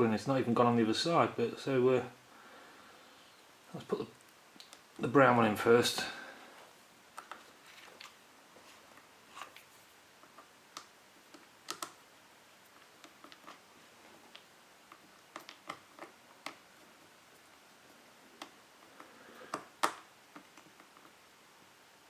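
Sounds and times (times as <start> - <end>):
faint clicks of handling wires: 4.0 - 5.0, 6.0 - 12.0, 12.6 - 17.6.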